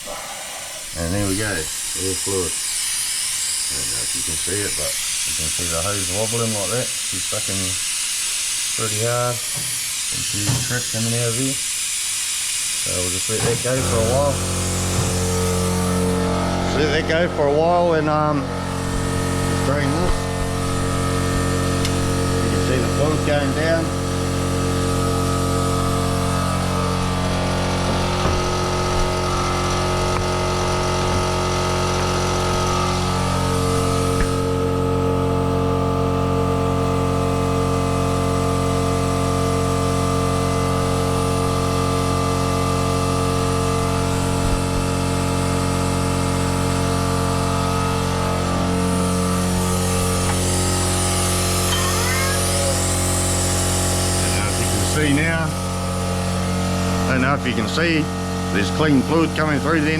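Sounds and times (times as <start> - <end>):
vacuum pump humming and hissing: 0.0 - 59.9.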